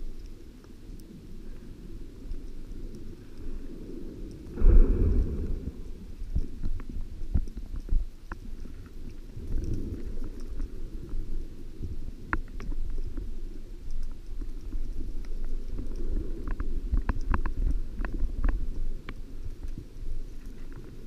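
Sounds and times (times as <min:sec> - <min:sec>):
faint clicks: 0:00.0 - 0:21.0
underwater rumble of water: 0:00.0 - 0:21.0
rush of water: 0:04.3 - 0:10.9.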